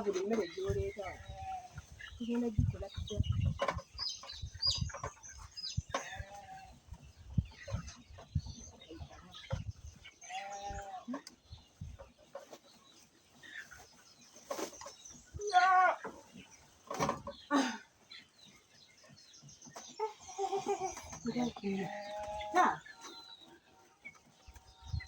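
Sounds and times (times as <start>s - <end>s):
farm animals calling: 0.0s - 25.0s
rustling: 10.3s - 17.5s.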